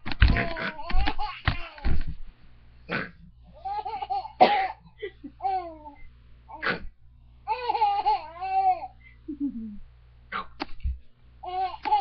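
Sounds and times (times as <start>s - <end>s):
baby laughing: 0.3s - 1.9s, 3.5s - 6.0s, 7.5s - 9.7s, 11.4s - 12.0s.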